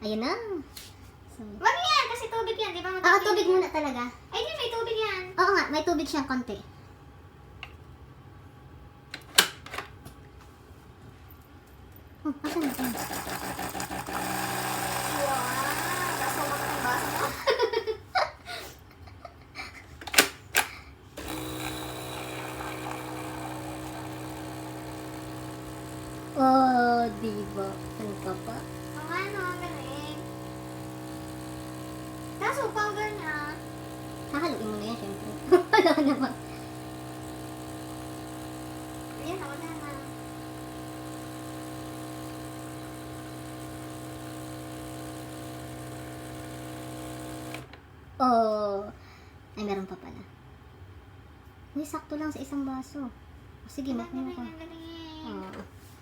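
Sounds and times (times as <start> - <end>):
coffee machine humming: 12.5 - 17.6, 21.2 - 47.8.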